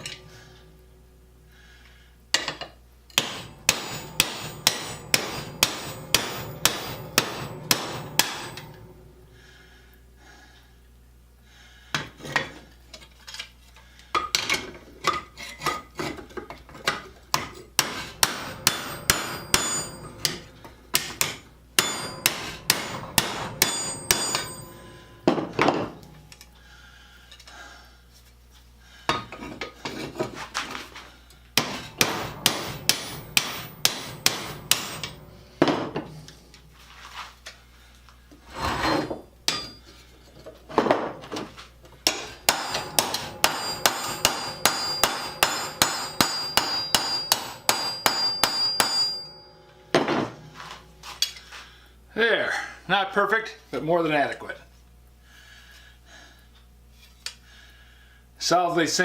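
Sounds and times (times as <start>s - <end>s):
hammer blows on metal: 17.8s - 26.2s, 42.1s - 50.0s.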